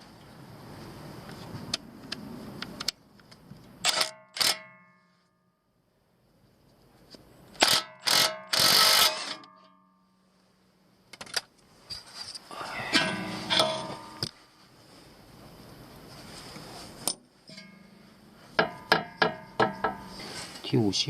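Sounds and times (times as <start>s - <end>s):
handling clicks and rumble: 1.2s - 4.6s
metal tools clanking: 12.6s - 14.3s, 17.0s - 20.6s.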